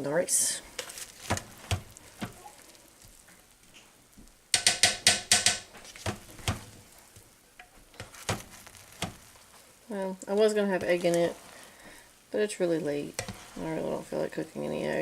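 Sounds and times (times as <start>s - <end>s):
utensil scraping a pot: 4.6s - 9.7s, 12.8s - 14.0s.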